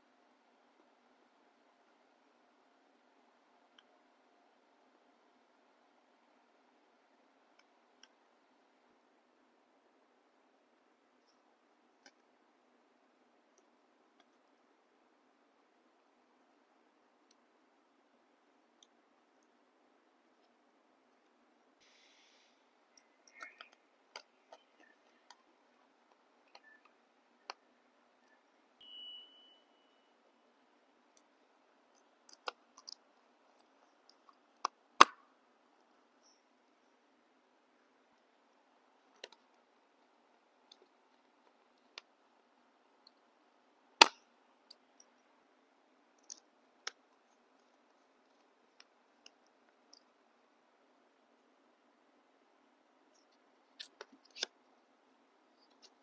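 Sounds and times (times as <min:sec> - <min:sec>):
short hiss: 0:21.8 - 0:22.7.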